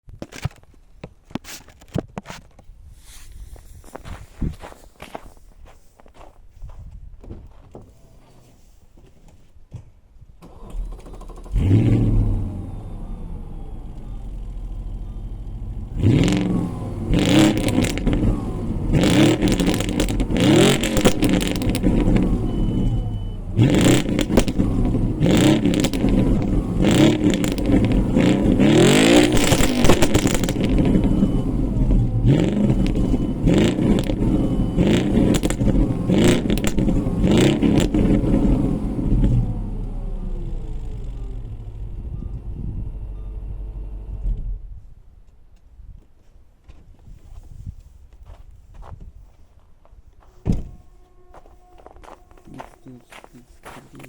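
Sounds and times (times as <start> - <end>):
car engine revving: 10.4 - 42.8
exhaust popping and crackling: 10.4 - 42.8.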